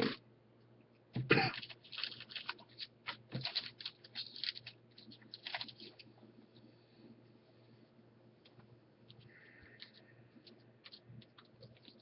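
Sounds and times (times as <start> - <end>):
cards and plastic sleeves rustling: 1.2 - 6.6, 8.4 - 12.0.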